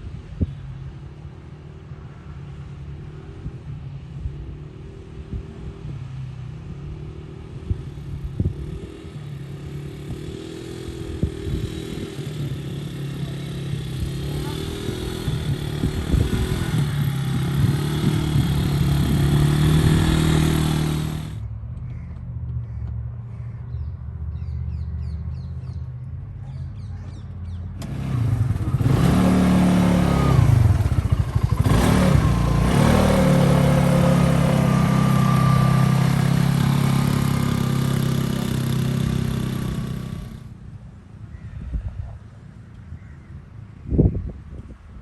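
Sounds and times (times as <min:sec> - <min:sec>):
quad bike engine revving: 0:07.0 - 0:21.4, 0:27.7 - 0:40.6.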